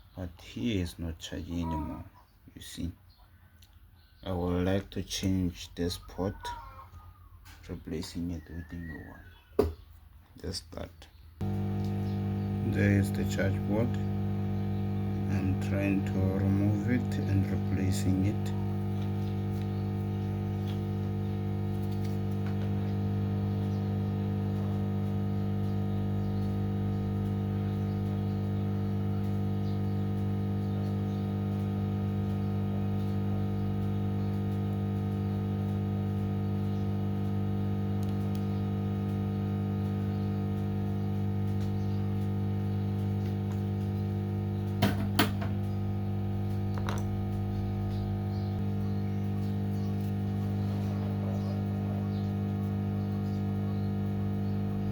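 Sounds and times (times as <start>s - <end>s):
electrical hum: 11.4s - 54.9s.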